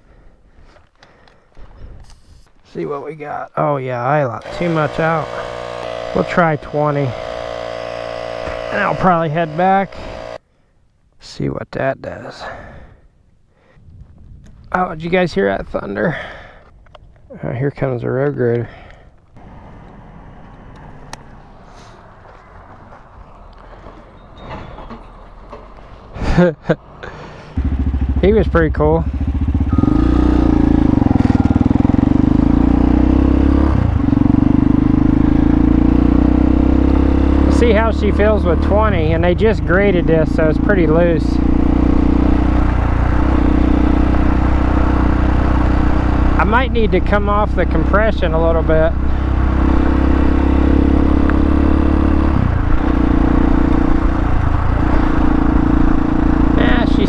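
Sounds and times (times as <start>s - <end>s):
wind: 0.0s - 57.0s
motorcycle engine running: 4.4s - 10.4s, 27.4s - 57.0s.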